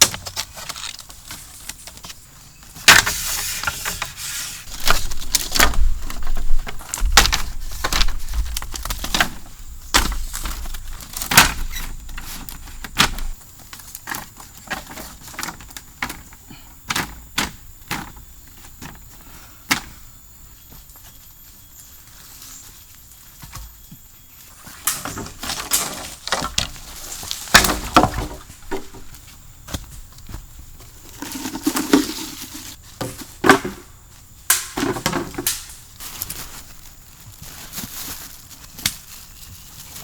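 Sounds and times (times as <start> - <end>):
knocks snaps and rustling: 4.7 - 16.3, 24.8 - 29.1, 34.5 - 36.7, 38.6 - 39.3.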